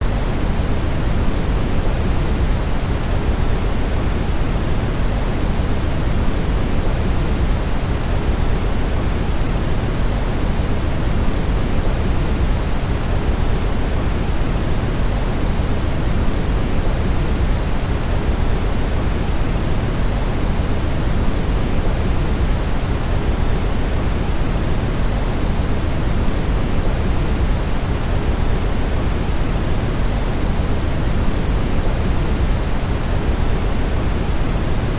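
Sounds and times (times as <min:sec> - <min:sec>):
steady brown noise: 0:00.0 - 0:34.9.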